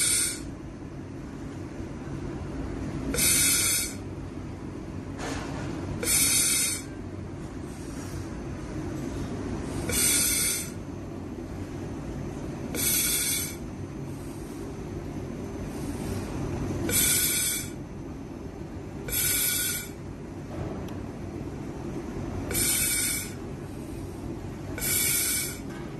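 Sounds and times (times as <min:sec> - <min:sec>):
low machine hum: 0:00.0 - 0:25.9
welding machine hiss: 0:03.2 - 0:04.0, 0:06.0 - 0:06.9, 0:09.9 - 0:10.8, 0:12.8 - 0:13.6, 0:16.9 - 0:17.8, 0:22.5 - 0:24.0, 0:24.8 - 0:25.7.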